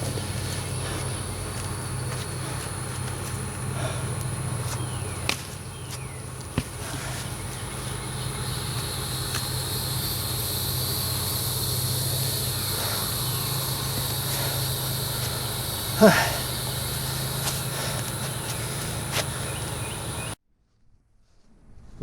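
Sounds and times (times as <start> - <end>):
insect buzz: 0.0 - 20.4
low engine hum: 0.0 - 20.4.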